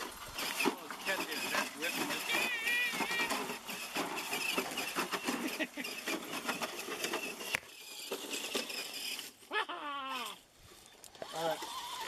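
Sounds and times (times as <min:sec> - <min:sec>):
electric motor whine: 0:00.0 - 0:09.5, 0:11.0 - 0:12.0
tires clattering on rock: 0:00.0 - 0:09.5.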